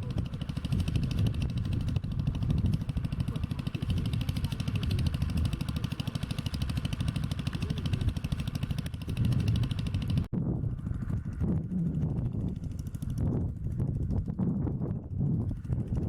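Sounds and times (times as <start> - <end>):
small engine running: 0.0 - 16.0
low rumble: 9.0 - 16.0.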